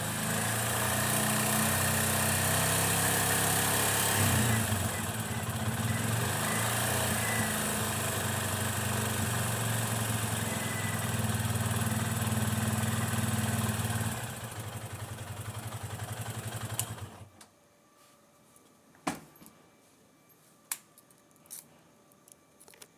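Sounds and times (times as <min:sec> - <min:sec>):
motorcycle engine running: 0:00.0 - 0:17.3.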